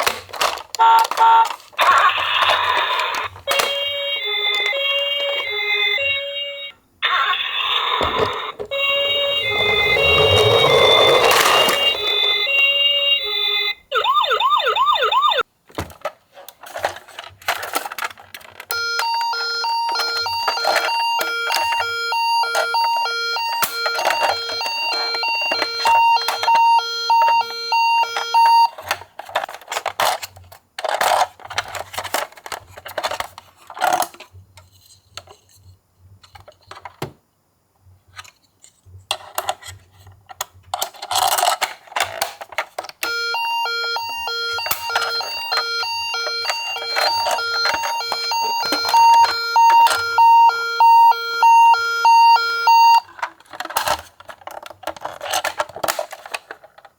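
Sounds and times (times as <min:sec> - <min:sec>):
plastic toy clicks and knocks: 0:00.0 - 0:03.8, 0:15.7 - 0:19.3, 0:28.1 - 0:34.3, 0:39.1 - 0:43.2, 0:44.5 - 0:50.4, 0:53.0 - 0:56.9
toy siren warbling wail: 0:00.8 - 0:15.4, 0:18.7 - 0:28.7, 0:43.0 - 0:53.1
two-tone hi-lo siren: 0:03.5 - 0:15.4, 0:18.7 - 0:28.7, 0:43.0 - 0:53.1.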